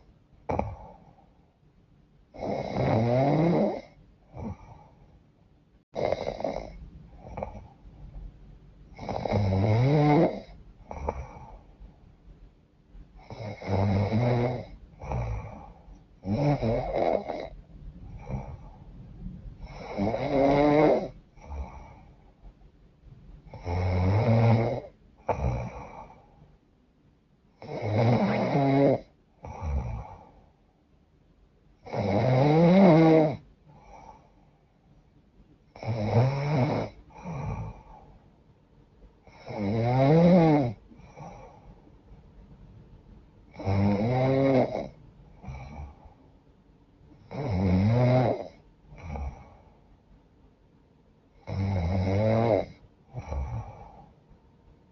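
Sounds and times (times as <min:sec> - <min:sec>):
faint breath sounds: 0:00.0 - 0:01.7, 0:03.8 - 0:05.6, 0:10.5 - 0:12.2, 0:14.7 - 0:16.4, 0:17.5 - 0:20.2, 0:21.1 - 0:22.7, 0:25.2 - 0:26.6, 0:29.3 - 0:31.0, 0:33.6 - 0:35.2, 0:37.0 - 0:38.5, 0:40.9 - 0:42.5, 0:44.9 - 0:47.3, 0:48.9 - 0:50.2, 0:52.8 - 0:54.9
woman snoring: 0:00.5 - 0:01.1, 0:02.4 - 0:04.9, 0:06.0 - 0:07.7, 0:09.0 - 0:11.6, 0:13.2 - 0:17.6, 0:18.2 - 0:18.8, 0:19.6 - 0:22.1, 0:23.5 - 0:26.2, 0:27.6 - 0:30.3, 0:31.8 - 0:34.1, 0:35.8 - 0:38.1, 0:39.3 - 0:41.6, 0:43.5 - 0:46.1, 0:47.3 - 0:49.6, 0:51.4 - 0:54.1.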